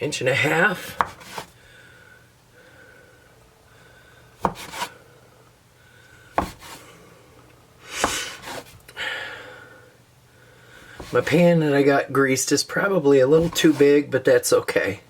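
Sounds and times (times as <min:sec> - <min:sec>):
knife cutting dough: 0:00.9 - 0:01.5, 0:04.4 - 0:05.0, 0:06.4 - 0:06.8, 0:08.0 - 0:08.8, 0:10.9 - 0:11.4, 0:13.4 - 0:13.9.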